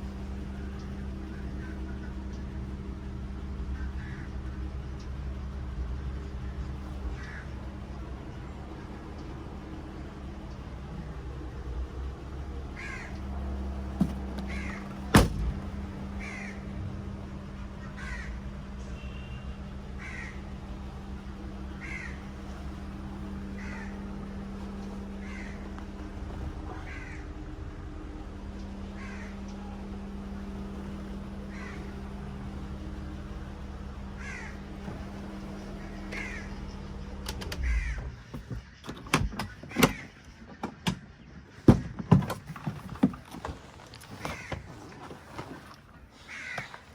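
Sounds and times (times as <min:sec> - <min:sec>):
car engine idling: 0:00.0 - 0:46.9
crow cawing: 0:03.7 - 0:04.6, 0:07.1 - 0:07.6, 0:12.7 - 0:14.9, 0:16.2 - 0:16.8, 0:17.8 - 0:19.4, 0:20.0 - 0:20.7, 0:21.6 - 0:26.0, 0:26.7 - 0:27.4, 0:28.9 - 0:29.8, 0:31.3 - 0:32.3, 0:34.0 - 0:36.8, 0:37.6 - 0:38.1, 0:44.3 - 0:44.6, 0:46.2 - 0:46.9.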